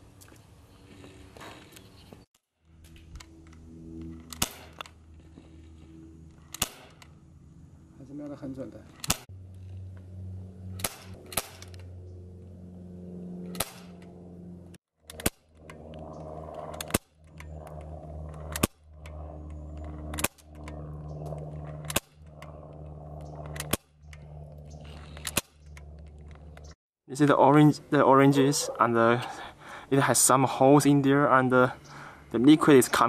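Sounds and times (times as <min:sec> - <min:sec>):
steady low hum: 0:00.0 - 0:33.0
air pistol shots: 0:04.3 - 0:04.8, 0:06.5 - 0:07.0, 0:10.8 - 0:11.7, 0:13.5 - 0:13.9.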